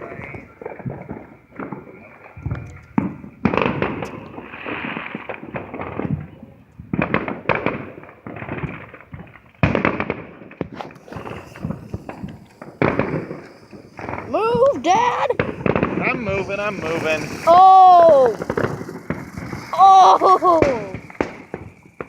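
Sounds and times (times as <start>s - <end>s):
fireworks cracking and popping: 0.0s - 22.0s.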